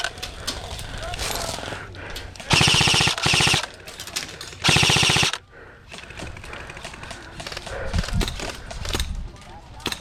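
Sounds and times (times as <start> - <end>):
airsoft gun full-auto burst: 2.5 - 3.7, 4.6 - 5.4.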